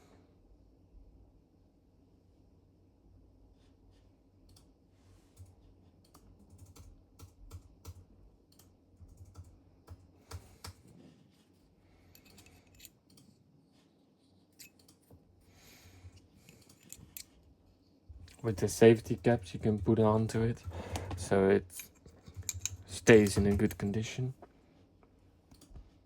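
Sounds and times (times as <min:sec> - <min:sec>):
clicks of small metal parts: 0:12.2 - 0:13.3, 0:16.1 - 0:17.3, 0:21.7 - 0:24.0.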